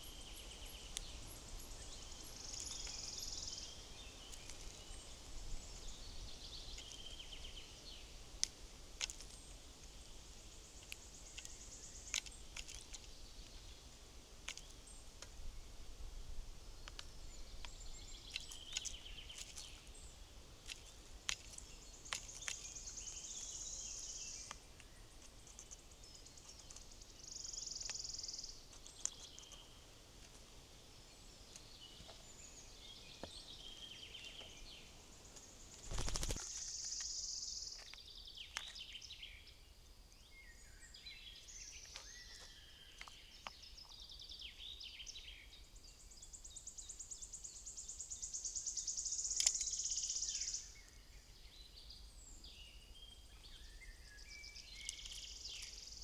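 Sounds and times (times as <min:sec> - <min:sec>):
songbirds chirping: 0:00.0 - 0:56.0
wing flutter: 0:35.3 - 0:37.0
buzzy bird trills: 0:35.8 - 0:36.4.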